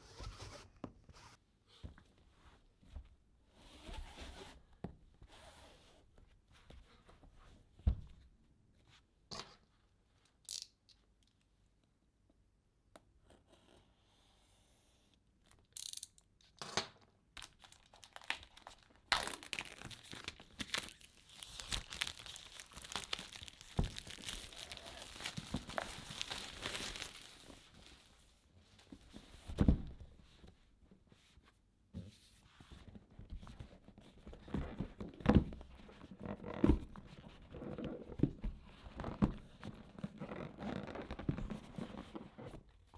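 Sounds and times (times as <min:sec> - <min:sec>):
light tapping on packaging: 0:17.4 - 0:27.6
wrapping tearing and crinkling: 0:17.4 - 0:28.2.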